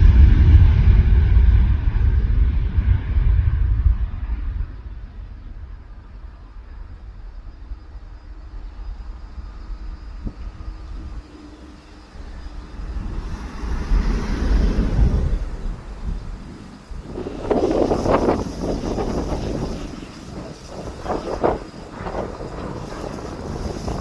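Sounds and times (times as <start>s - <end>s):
jet engines rumbling: 0.0s - 24.0s
wind buffeting microphone: 0.0s - 24.0s.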